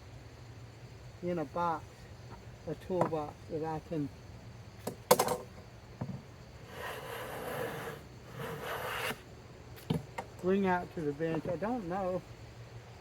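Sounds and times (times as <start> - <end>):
hand plane shaving wood: 6.6 - 9.2.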